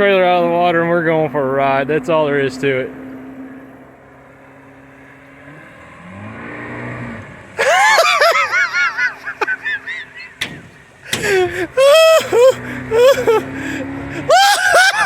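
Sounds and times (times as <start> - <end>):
outboard motor running: 9.9 - 14.3
person laughing and whooping: 11.7 - 13.6, 14.2 - 15.0.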